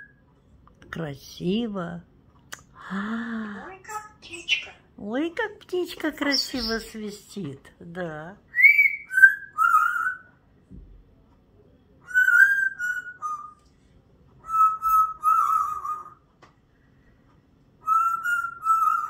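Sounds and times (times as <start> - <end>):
parrot whistling a tune: 8.5 - 10.3, 12.0 - 13.6, 14.4 - 16.2, 17.8 - 19.0.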